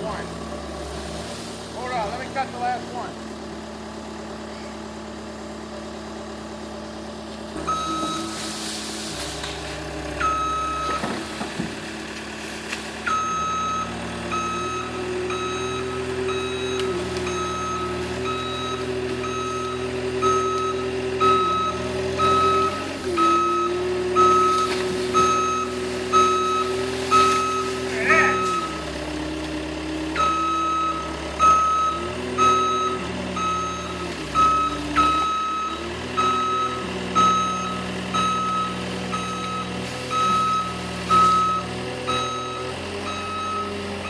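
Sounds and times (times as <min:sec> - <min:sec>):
truck engine running: 0:00.0 - 0:44.0
reversing alarm beeping: 0:07.7 - 0:08.5, 0:10.2 - 0:11.1, 0:13.1 - 0:29.0, 0:30.1 - 0:44.0.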